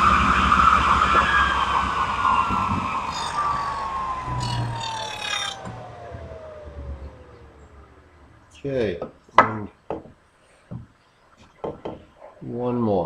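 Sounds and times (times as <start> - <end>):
saw blade whine coasting down: 0.0 - 9.6.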